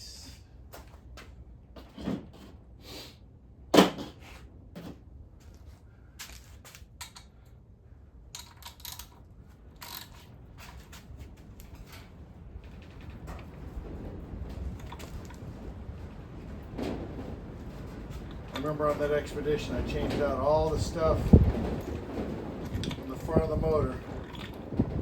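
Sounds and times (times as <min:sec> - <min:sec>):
metal tools clinking: 0:09.8 - 0:10.9.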